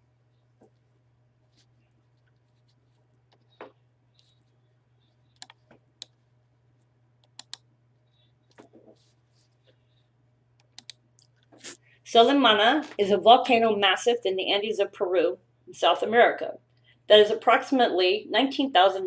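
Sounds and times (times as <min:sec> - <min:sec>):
faint low hum: 0:00.0 - 0:19.0
computer mouse and keyboard clicks: 0:05.3 - 0:06.2, 0:07.2 - 0:07.6, 0:10.6 - 0:11.5.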